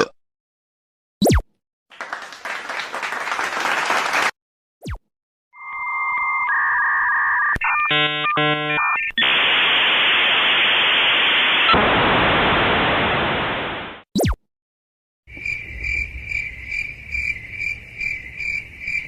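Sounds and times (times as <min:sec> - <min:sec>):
electronic beep tones: 0:05.6 - 0:09.1
loud hissing static: 0:09.2 - 0:14.0.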